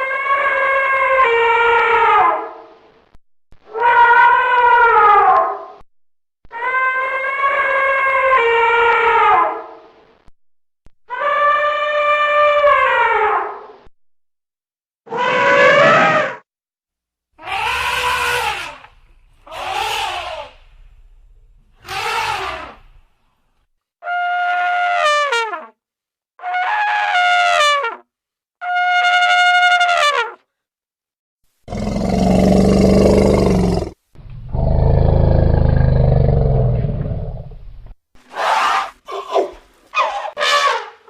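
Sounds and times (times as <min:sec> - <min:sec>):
elephants trumpeting: 0:17.4 - 0:20.8, 0:21.7 - 0:23.0
elephant deep rough calls: 0:17.4 - 0:20.9, 0:21.7 - 0:23.0, 0:31.7 - 0:37.6.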